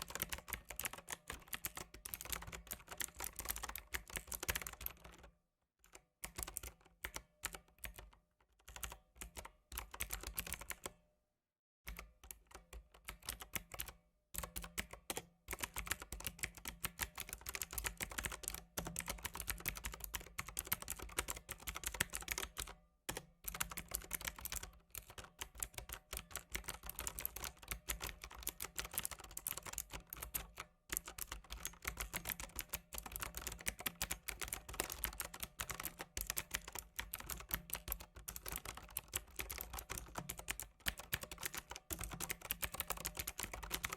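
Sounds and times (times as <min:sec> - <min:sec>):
computer keyboard typing: 0:00.0 - 0:05.3, 0:05.9 - 0:10.9, 0:11.9 - 0:43.9.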